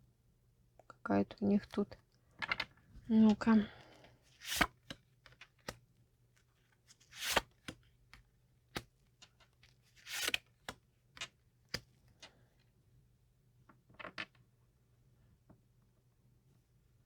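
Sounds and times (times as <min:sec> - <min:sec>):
cards swishing: 0:04.4 - 0:04.8, 0:07.1 - 0:07.5, 0:10.0 - 0:10.4
cards clicking and tapping down: 0:04.4 - 0:05.8, 0:07.1 - 0:12.3.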